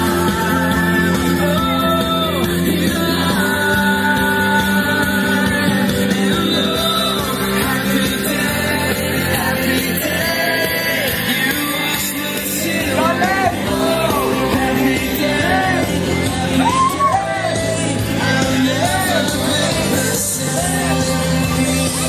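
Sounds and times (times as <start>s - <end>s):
loud music with singing: 0.0s - 22.0s
people shouting: 12.9s - 17.8s.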